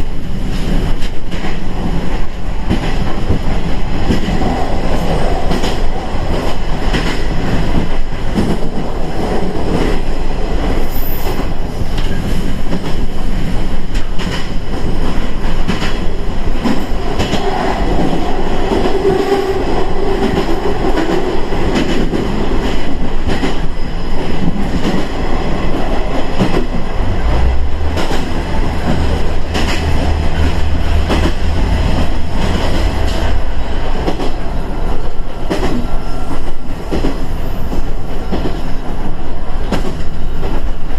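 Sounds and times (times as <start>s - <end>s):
diesel railcar rumbling: 0.0s - 40.9s
wheels clicking over rail joints: 11.4s - 34.5s.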